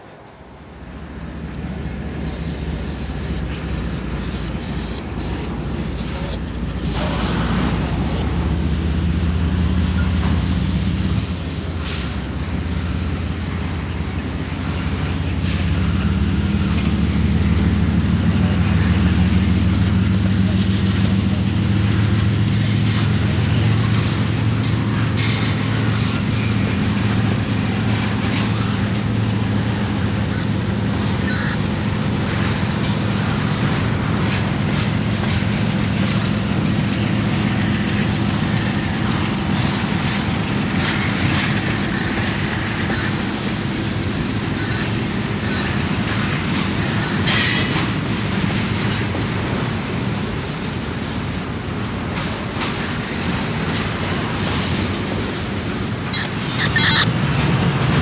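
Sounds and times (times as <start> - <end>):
diesel locomotive engine drone: 0.0 - 58.0
wheels clicking over rail joints: 0.8 - 58.0
wheel squeal: 22.1 - 48.3, 54.5 - 57.1.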